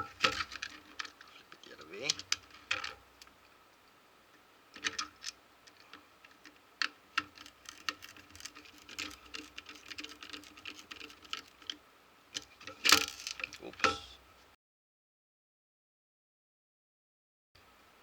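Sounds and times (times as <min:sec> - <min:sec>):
plastic clicks and knocks: 0:00.0 - 0:03.4.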